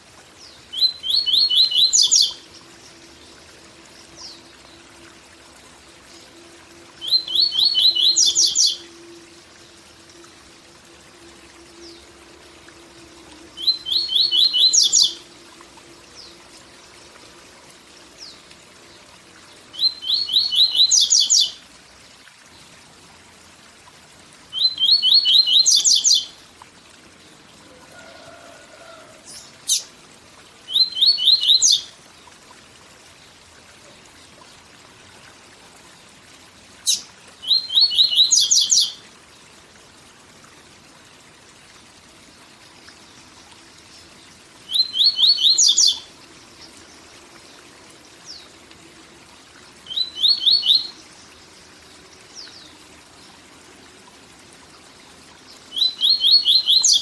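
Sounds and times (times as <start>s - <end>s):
small bird singing: 0.4s - 2.4s, 7.0s - 8.9s, 13.6s - 15.2s, 19.7s - 21.6s, 24.5s - 26.3s, 30.7s - 31.9s, 36.8s - 39.0s, 44.7s - 46.1s, 49.9s - 51.1s, 55.6s - 57.0s
waterfall rushing: 27.6s - 29.7s.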